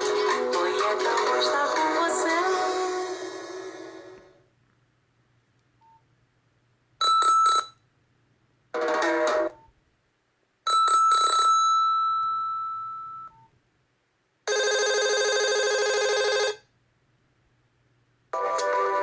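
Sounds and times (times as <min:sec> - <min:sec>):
phone beeps: 0:07.0 - 0:07.8, 0:10.7 - 0:13.5.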